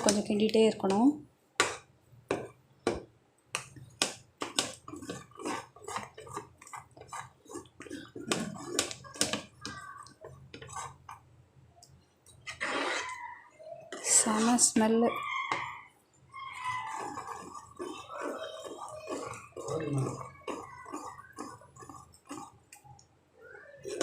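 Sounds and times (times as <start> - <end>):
wet sticky paste sounds: 16.3 - 23.0.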